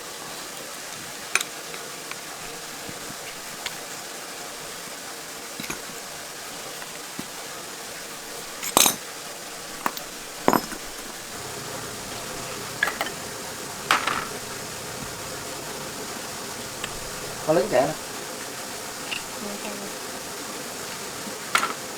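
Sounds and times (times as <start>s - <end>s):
steady background hiss: 0.0s - 21.9s
metal tools clinking: 8.6s - 9.0s, 9.9s - 11.2s.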